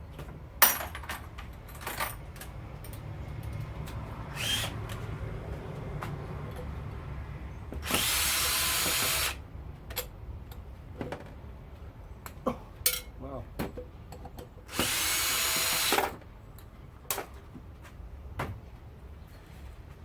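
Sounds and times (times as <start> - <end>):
power drill spinning: 4.3 - 4.8, 7.8 - 9.4, 14.7 - 16.1.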